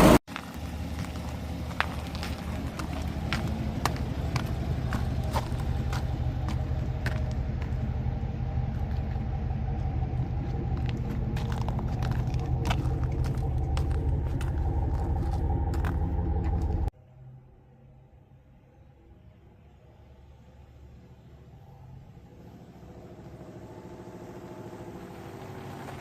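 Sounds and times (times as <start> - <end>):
small engine running: 0.0 - 16.9.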